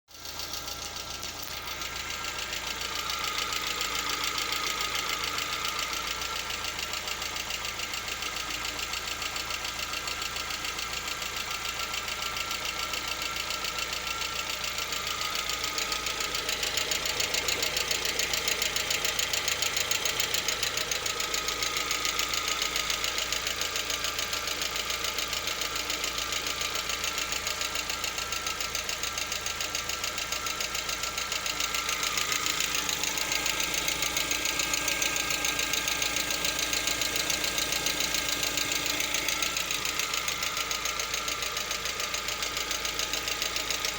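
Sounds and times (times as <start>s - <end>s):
car engine idling with knock: 0.1s - 43.9s.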